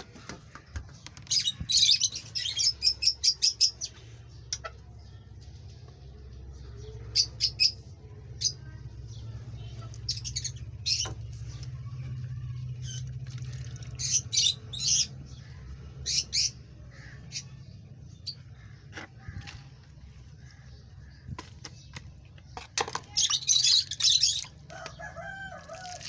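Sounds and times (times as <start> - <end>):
parrots squawking and chirping: 1.3 - 3.8, 23.0 - 25.9
steady low hum: 2.7 - 22.6.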